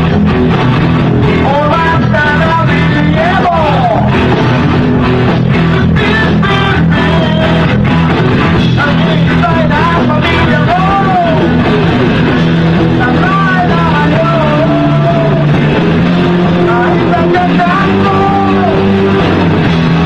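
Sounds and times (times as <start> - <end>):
live rock band playing: 0.0 - 20.0.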